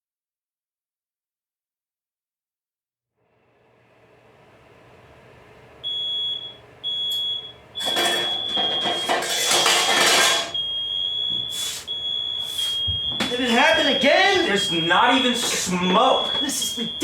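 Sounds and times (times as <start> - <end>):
smoke alarm beeping: 5.8 - 17.0.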